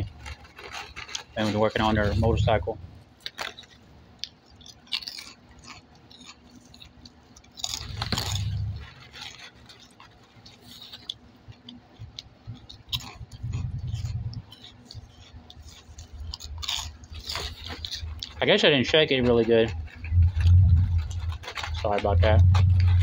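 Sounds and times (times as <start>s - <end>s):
low rumbling bursts: 0.0s - 3.2s, 7.8s - 9.1s, 12.4s - 14.6s, 17.9s - 23.0s
person chewing crunchy food: 0.0s - 23.0s.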